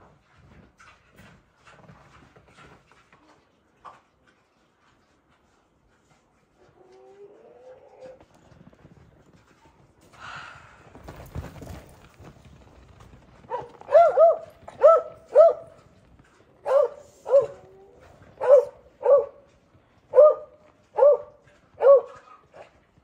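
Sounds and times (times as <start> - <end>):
dog barking: 13.5 - 15.8, 16.6 - 17.6, 18.4 - 19.5, 20.1 - 22.7.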